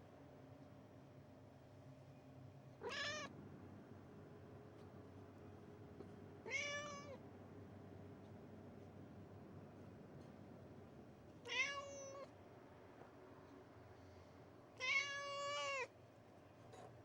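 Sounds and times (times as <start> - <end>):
cat meowing: 2.8 - 3.3, 11.5 - 12.3, 14.8 - 15.9.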